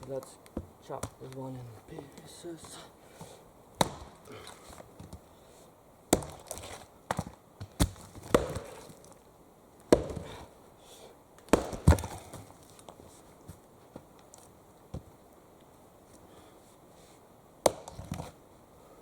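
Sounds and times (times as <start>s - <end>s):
axe chopping wood: 3.8s - 4.2s, 6.1s - 9.0s, 9.9s - 10.4s, 11.4s - 12.5s, 17.6s - 18.3s.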